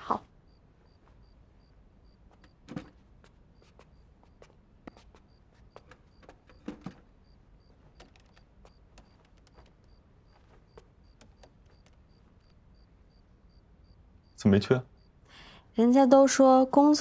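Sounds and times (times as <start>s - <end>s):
small clicks and taps: 7.7s - 12.6s.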